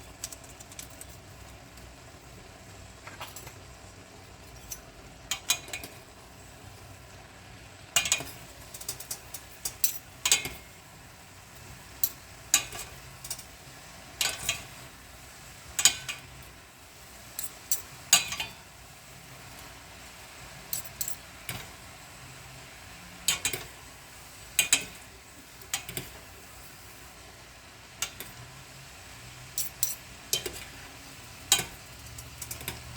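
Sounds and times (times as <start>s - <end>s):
metal utensil scraping a pan: 29.3s - 32.9s.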